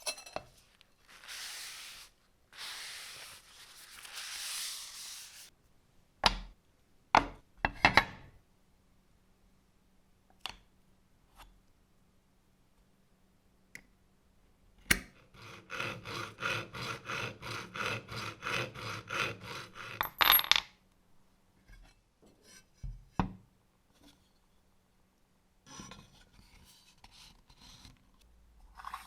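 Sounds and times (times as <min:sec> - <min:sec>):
rapid filing strokes: 0:15.3 - 0:20.0.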